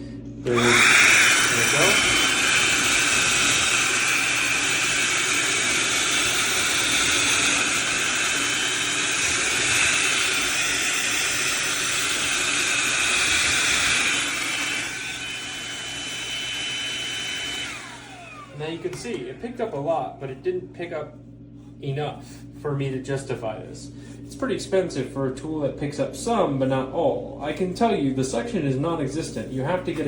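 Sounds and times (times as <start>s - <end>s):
handheld vacuum motor whine: 0.4s - 19.4s.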